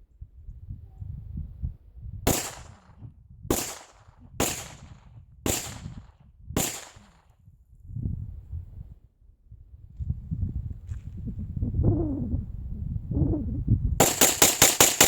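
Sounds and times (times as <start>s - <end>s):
rifle shots with echo: 2.3s - 7.2s, 14.0s - 15.0s.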